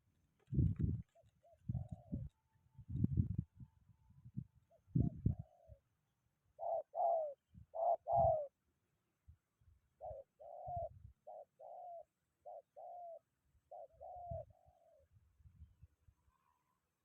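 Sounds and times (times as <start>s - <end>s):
doves cooing: 5.0s - 5.8s, 6.6s - 8.5s, 10.0s - 15.1s.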